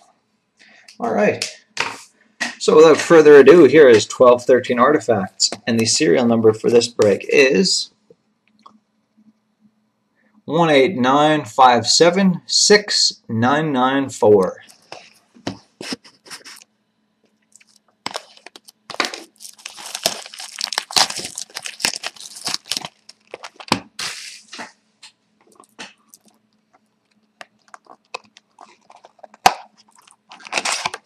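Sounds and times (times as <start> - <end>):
plastic wrap crinkling and tearing: 17.5 - 24.5, 25.5 - 31.0
card packs rustling and clicking: 17.6 - 24.2, 27.1 - 31.0.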